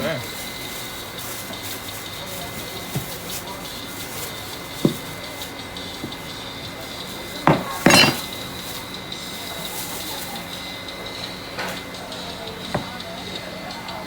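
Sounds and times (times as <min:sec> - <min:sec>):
kitchenware clattering knocks: 0:07.4 - 0:08.6.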